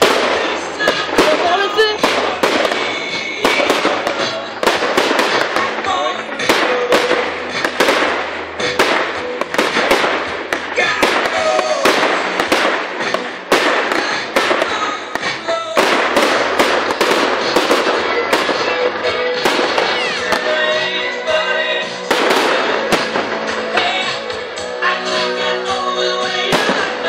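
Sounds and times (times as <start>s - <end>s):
firework shells bursting: 0.0s - 21.0s, 21.8s - 24.3s
music playing: 0.0s - 27.0s.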